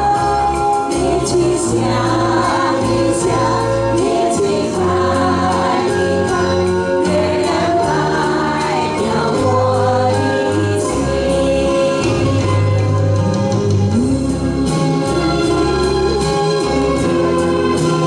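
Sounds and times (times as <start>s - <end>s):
choir singing: 0.0s - 12.9s
instrumental accompaniment: 0.0s - 18.0s.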